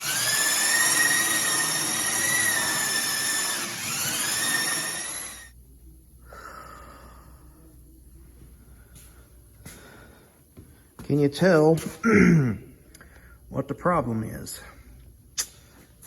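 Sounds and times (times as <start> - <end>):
high-pitched power tool whine: 0.0 - 5.5.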